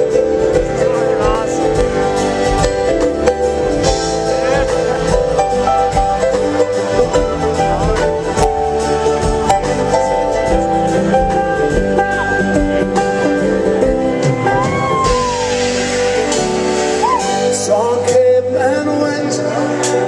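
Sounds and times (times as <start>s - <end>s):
acoustic band with banjo: 0.0s - 20.0s.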